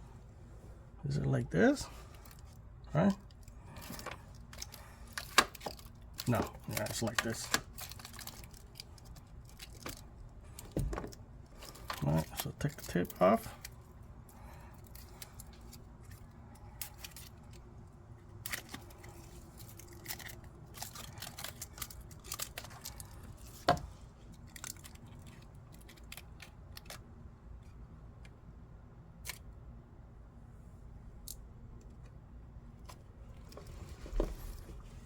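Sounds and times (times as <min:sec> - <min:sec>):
faint crinkles and small clicks: 0:01.9 - 0:28.4, 0:29.2 - 0:29.5.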